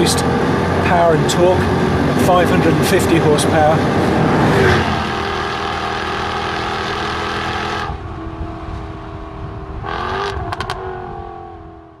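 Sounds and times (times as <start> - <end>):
car engine accelerating: 0.0 - 12.0
exhaust cracks: 9.8 - 10.9.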